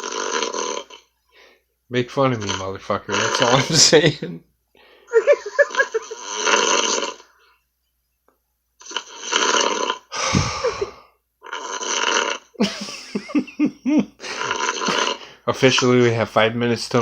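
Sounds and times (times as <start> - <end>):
man snoring heavily: 0.0 - 1.0, 5.5 - 7.4, 8.8 - 13.4, 14.2 - 15.5
deep snort: 0.0 - 1.6, 5.7 - 7.5, 8.8 - 13.1, 14.2 - 15.9
short throaty snorts: 6.0 - 7.4, 8.8 - 12.8, 14.2 - 15.4.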